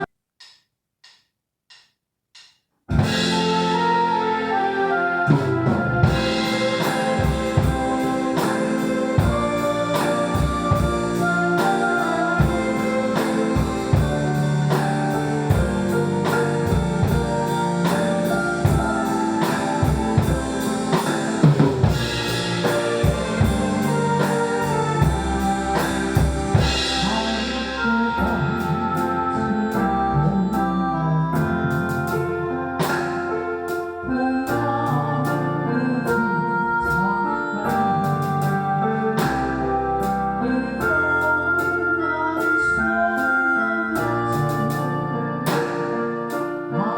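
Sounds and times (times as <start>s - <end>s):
drum kit playing: 2.9s - 29.7s, 31.4s - 34.0s, 44.0s - 46.7s
backing track music: 2.9s - 46.9s.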